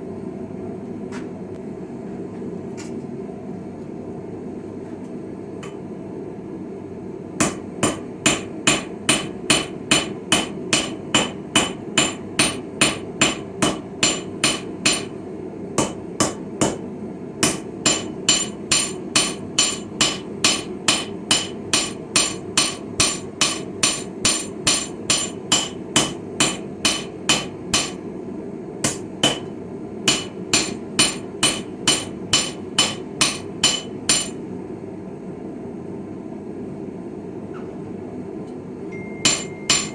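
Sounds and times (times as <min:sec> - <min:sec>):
steady low hum: 0:00.0 - 0:39.9
hammer striking steel on anvil: 0:07.4 - 0:15.2, 0:15.8 - 0:16.8, 0:17.4 - 0:28.0, 0:28.8 - 0:34.4, 0:39.0 - 0:39.9.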